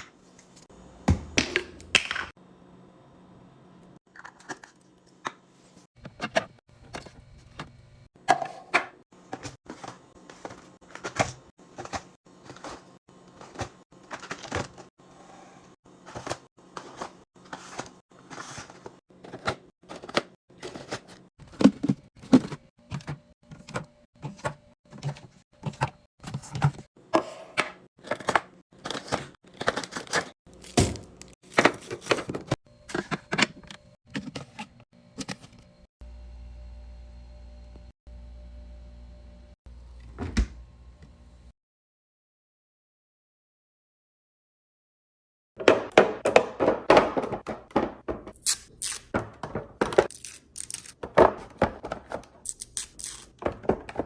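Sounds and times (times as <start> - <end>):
containers clacking and knocking: 45.6 - 48.4.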